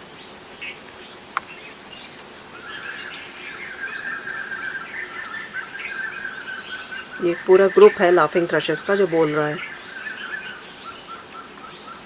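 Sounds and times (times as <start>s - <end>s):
birds chattering chorus: 0.0s - 12.0s
high insect drone: 0.0s - 12.0s.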